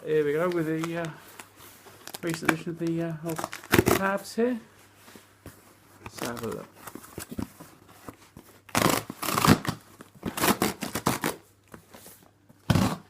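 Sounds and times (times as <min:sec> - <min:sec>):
cardboard ripping and scraping: 0:08.1 - 0:11.5, 0:12.6 - 0:13.0.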